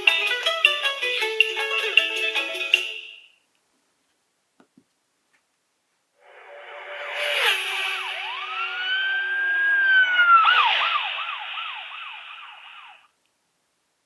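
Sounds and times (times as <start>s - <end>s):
siren-like phone ringtone: 7.4s - 13.0s.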